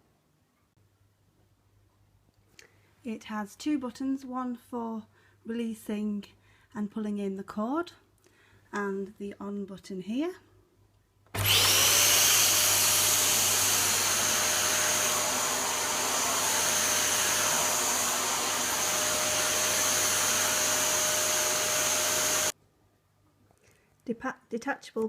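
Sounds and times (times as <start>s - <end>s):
vacuum cleaner motor whining: 11.3s - 22.6s.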